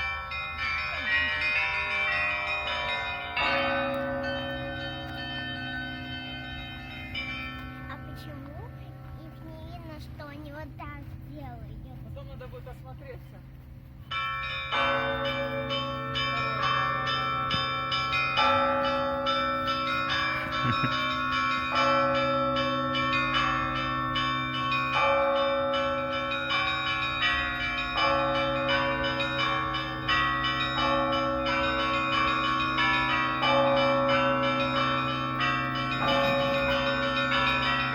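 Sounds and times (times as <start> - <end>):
deep ringing of large bells: 0.0 - 10.8, 14.0 - 37.9
small bells striking quickly: 14.1 - 37.9.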